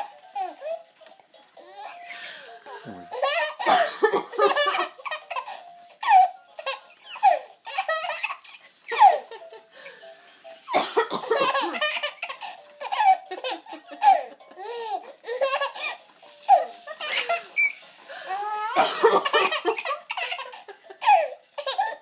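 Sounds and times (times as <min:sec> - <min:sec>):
baby belly laughing: 0:02.9 - 0:09.5, 0:10.7 - 0:22.0
woman coughing: 0:03.6 - 0:04.6, 0:10.8 - 0:11.8, 0:18.8 - 0:19.5.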